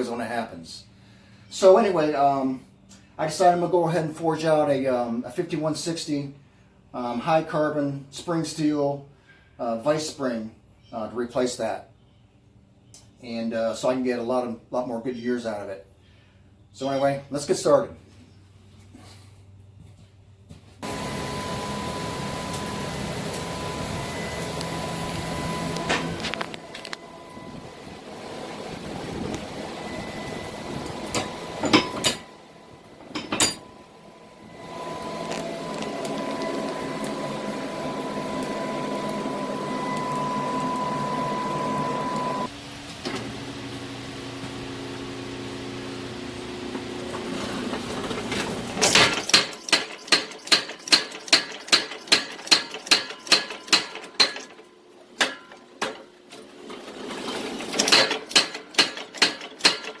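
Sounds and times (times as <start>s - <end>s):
steady machine drone: 20.8s - 42.5s.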